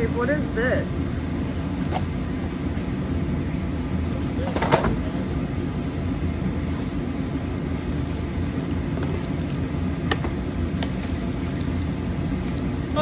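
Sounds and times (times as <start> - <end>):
steady low rumble: 0.0 - 13.0.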